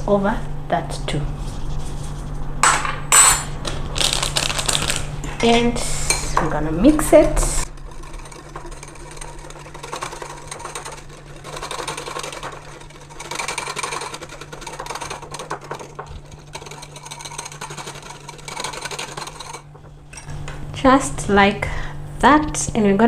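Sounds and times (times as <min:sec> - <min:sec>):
utensil tapping and scraping bowl: 0:04.4 - 0:20.6.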